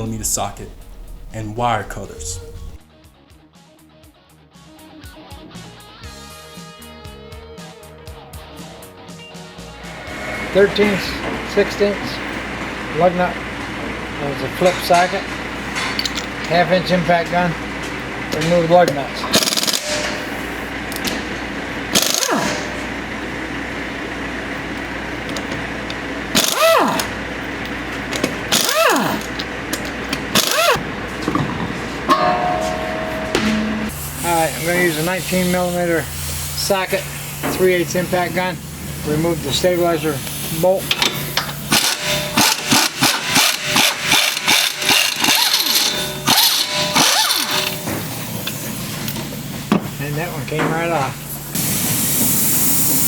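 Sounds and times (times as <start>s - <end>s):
impact gun bursts: 19.3s - 20.6s, 21.2s - 22.9s, 26.3s - 27.2s, 30.3s - 30.8s, 41.7s - 47.8s.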